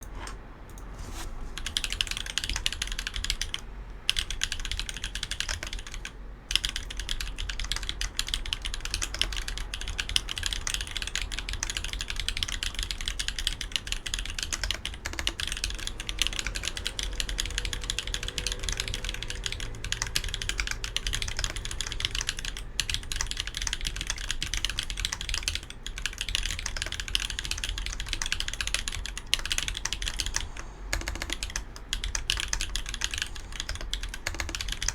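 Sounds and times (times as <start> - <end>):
mechanical keyboard typing: 1.6 - 34.9.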